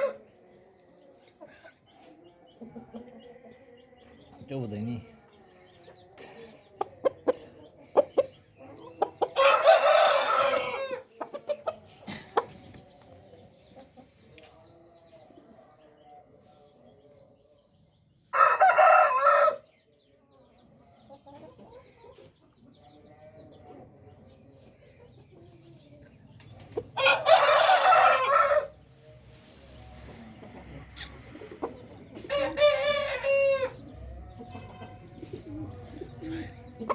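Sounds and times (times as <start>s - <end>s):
rooster crowing: 9.4s - 11.0s, 18.4s - 19.6s, 27.0s - 28.7s.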